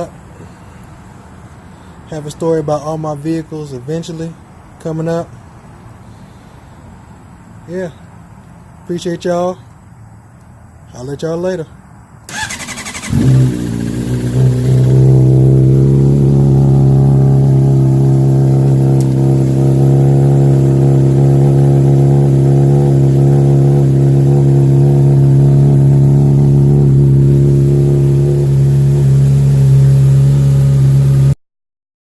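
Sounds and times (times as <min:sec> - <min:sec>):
engine running steadily: 0:12.3 - 0:31.4.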